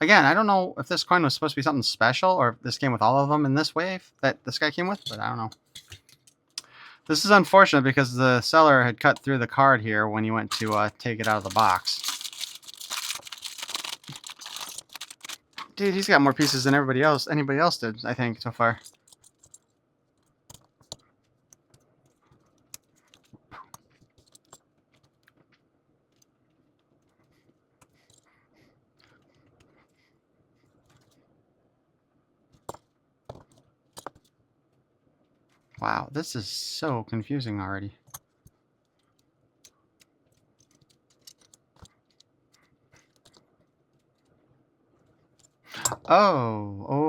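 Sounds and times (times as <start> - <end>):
plastic parts clicking: 10.5 - 17.2, 39.0 - 42.3.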